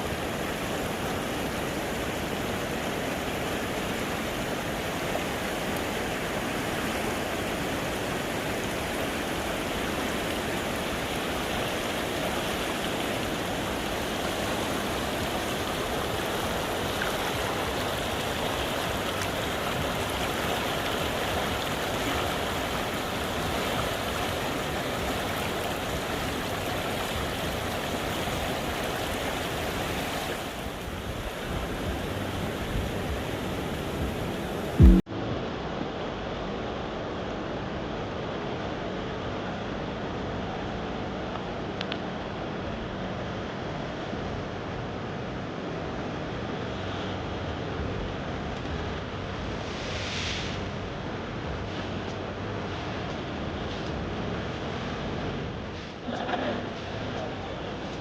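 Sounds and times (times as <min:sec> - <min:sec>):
water rushing: 0:00.0 - 0:35.1.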